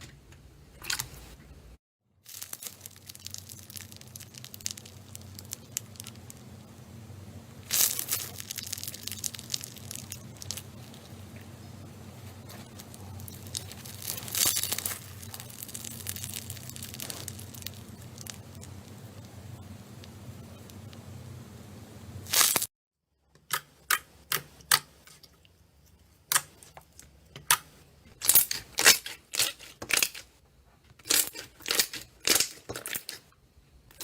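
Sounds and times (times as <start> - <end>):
slime crackling and popping: 2.3 - 6.7, 7.6 - 11.4, 12.3 - 20.8, 22.2 - 22.7, 31.0 - 33.2
faint low hum: 2.7 - 22.3.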